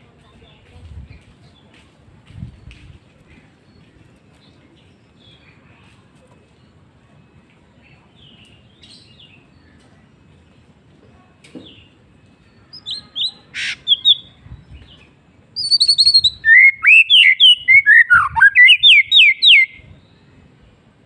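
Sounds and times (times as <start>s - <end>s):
bird rapid swooping song: 15.6s - 19.9s
bird whistled notes: 15.6s - 19.9s.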